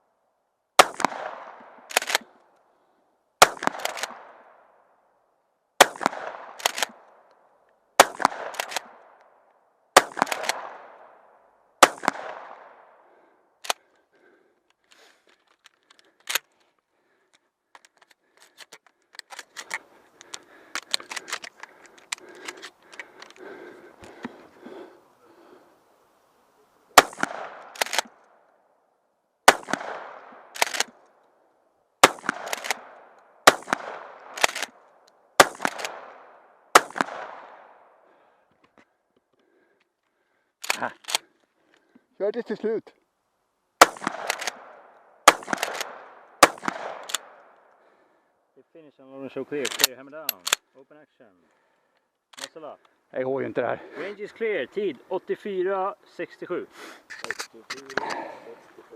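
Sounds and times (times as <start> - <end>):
shotgun shots: 0.8 - 2.4, 3.4 - 4.7, 5.8 - 7.2, 8.0 - 9.2, 9.9 - 13.8, 26.9 - 28.2, 29.4 - 31.0, 32.0 - 34.8, 35.4 - 37.9, 43.8 - 47.6
clicks and rattling: 14.7 - 23.4.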